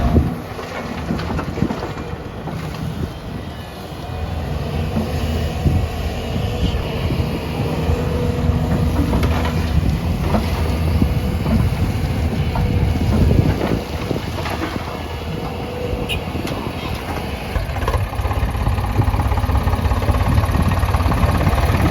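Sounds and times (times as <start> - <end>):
knocks and clatter: 0.0 - 3.0
heavy diesel machinery running: 0.0 - 21.9.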